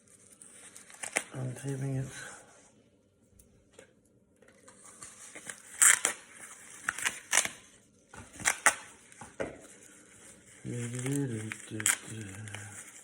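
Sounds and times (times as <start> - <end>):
paper and tape rustling: 0.0 - 2.1, 4.6 - 13.0
package tearing rips: 0.4 - 1.4, 4.8 - 9.2, 10.5 - 13.0.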